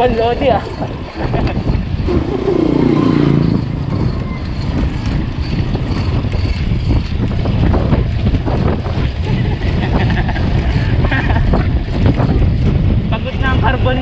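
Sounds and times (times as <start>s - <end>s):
wind rushing over microphone: 0.0s - 14.0s
vehicle passing by: 2.0s - 4.8s.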